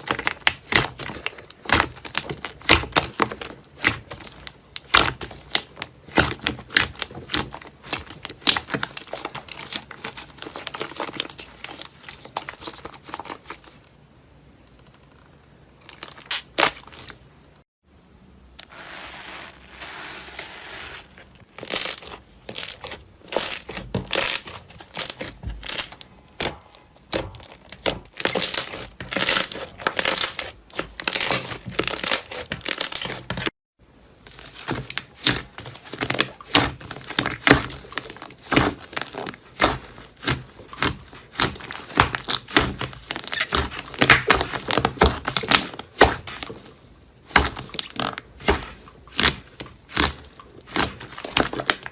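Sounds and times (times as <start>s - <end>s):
crinkly material being squeezed: 18.6s - 26.0s.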